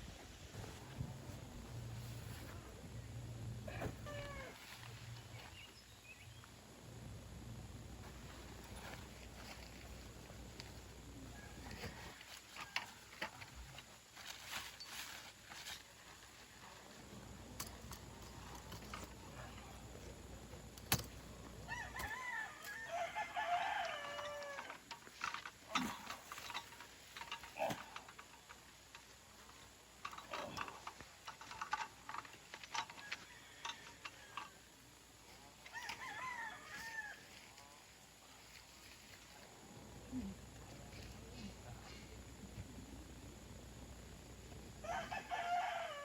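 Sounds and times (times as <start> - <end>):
rooster crowing: 3.7 - 4.8, 11.3 - 13.2, 21.6 - 24.8, 32.7 - 34.7, 35.6 - 37.6, 44.8 - 46.0.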